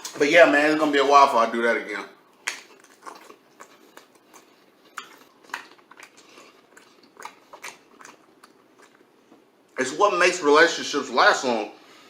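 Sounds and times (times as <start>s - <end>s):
chewing: 2.4s - 9.5s.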